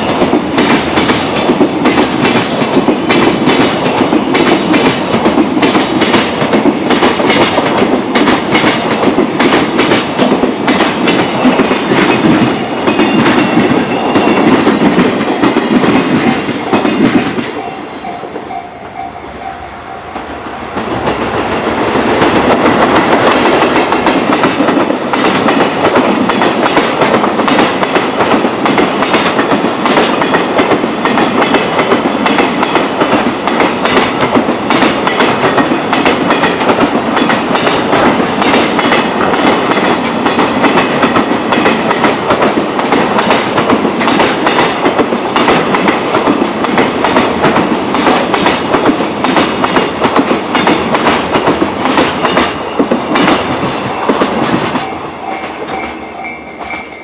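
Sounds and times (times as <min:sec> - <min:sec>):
train rumble: 0:00.0 - 0:57.0
wagons clattering over rail joints: 0:20.2 - 0:57.0.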